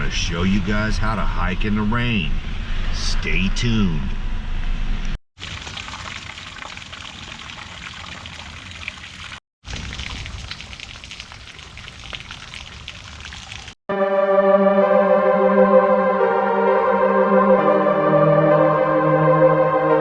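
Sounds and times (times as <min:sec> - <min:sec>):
rain falling: 0:05.4 - 0:13.8
keyboard music: 0:13.9 - 0:20.0.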